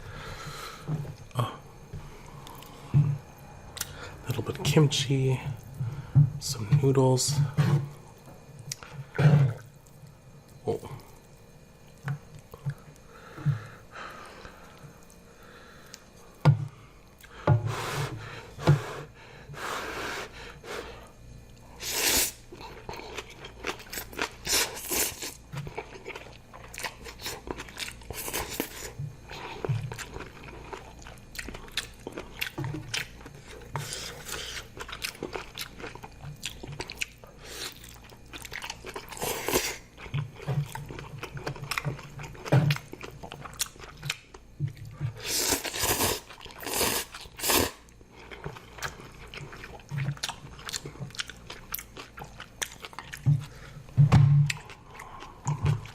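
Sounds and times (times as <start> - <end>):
chewing and crunching: 22.5 - 55.9.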